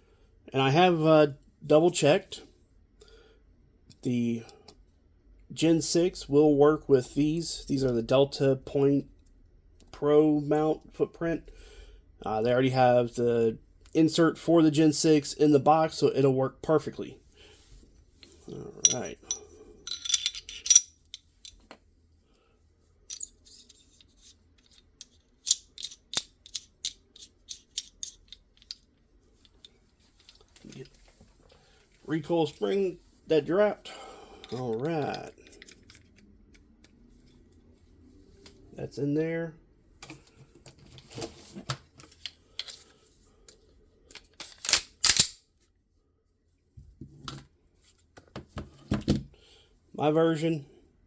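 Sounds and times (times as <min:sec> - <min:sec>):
metal parts clinking: 0:18.2 - 0:21.7, 0:23.1 - 0:31.0, 0:34.4 - 0:36.2, 0:44.1 - 0:45.4.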